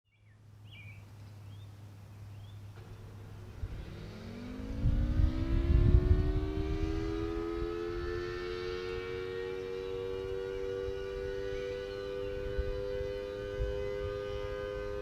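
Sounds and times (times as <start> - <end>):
low rumbling noise: 0.3 - 15.0
two-tone siren winding up: 4.2 - 15.0.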